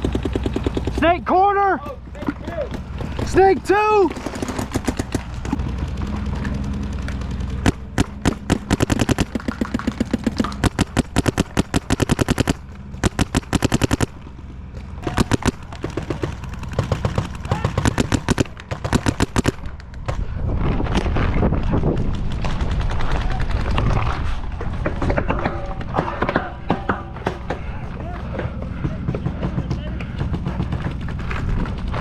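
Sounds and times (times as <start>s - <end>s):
paintball markers firing: 1.8s - 5.6s, 7.1s - 14.2s, 15.0s - 20.2s
wind rumble on microphone: 19.9s - 26.0s.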